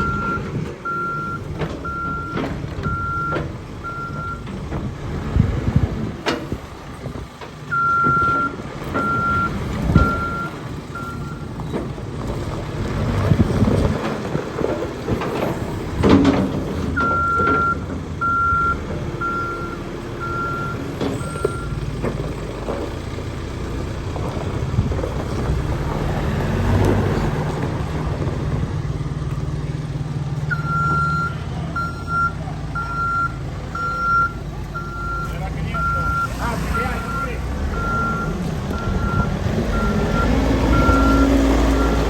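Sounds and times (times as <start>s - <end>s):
reversing alarm beeping: 0.0s - 4.5s, 7.7s - 11.5s, 17.0s - 21.8s, 30.5s - 42.0s
diesel engine running: 0.0s - 42.0s.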